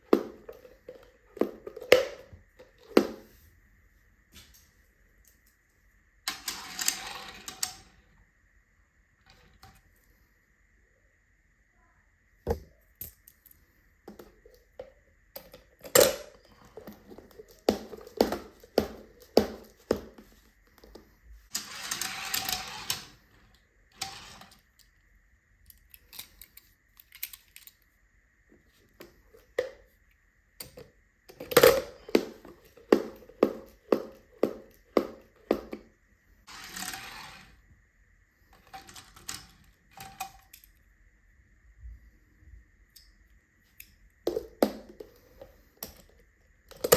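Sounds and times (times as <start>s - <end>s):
toy cars clattering on plastic: 6.3s - 8.0s, 21.5s - 23.3s, 23.9s - 24.7s, 36.5s - 37.6s, 38.6s - 40.7s
toy cars scraping rolls: 6.3s - 8.1s, 21.5s - 24.9s, 36.4s - 37.7s, 38.5s - 40.7s.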